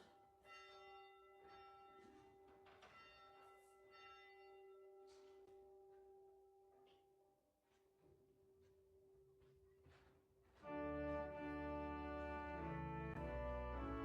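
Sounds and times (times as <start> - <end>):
organ playing slow chords: 10.7 - 14.0.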